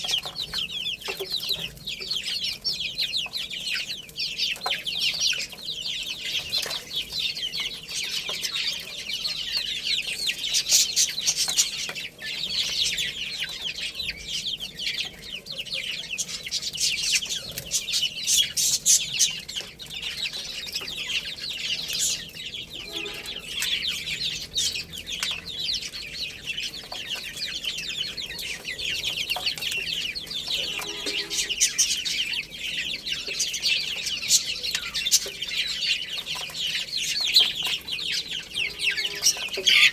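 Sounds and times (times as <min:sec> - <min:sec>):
baby chicks peeping: 0:00.0 - 0:39.9
lower bird call: 0:22.6 - 0:24.4.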